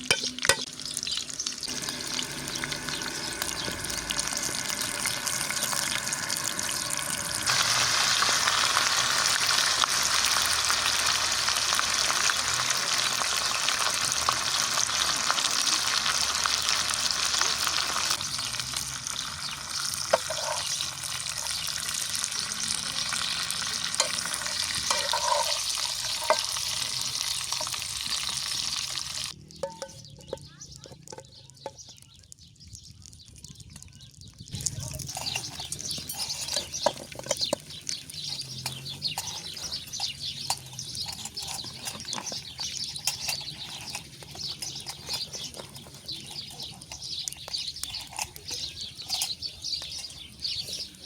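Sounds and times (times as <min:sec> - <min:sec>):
food sizzling in a pan: 0:00.0 - 0:29.8.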